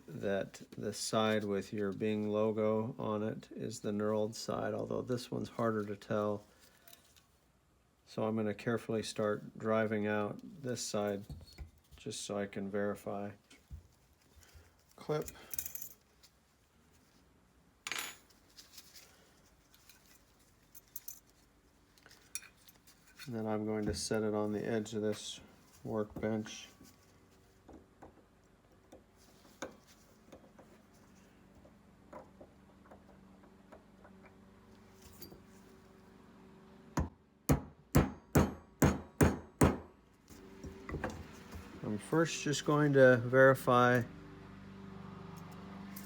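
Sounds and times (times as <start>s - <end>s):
hammer tapping a pin punch: 37.0s - 39.8s.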